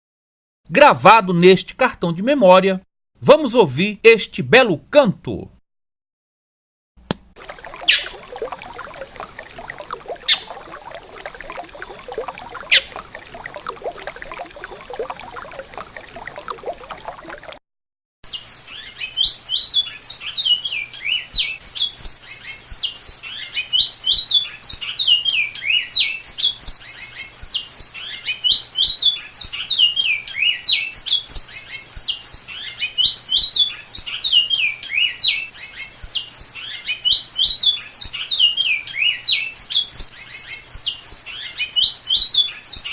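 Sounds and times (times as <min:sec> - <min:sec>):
running water: 0:07.2 - 0:17.6
finch singing whistled notes: 0:07.9 - 0:08.2, 0:10.3 - 0:10.5, 0:12.7 - 0:13.0.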